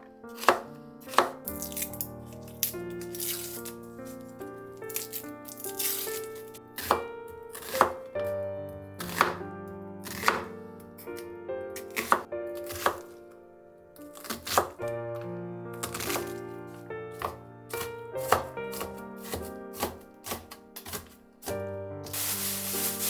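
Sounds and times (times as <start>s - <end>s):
soft background music: 0.0s - 23.0s
knife cutting on cutting board: 0.4s - 4.3s, 4.9s - 8.0s, 9.0s - 9.4s, 10.0s - 10.5s, 14.1s - 14.8s, 15.8s - 16.4s, 17.2s - 21.2s, 22.1s - 23.0s.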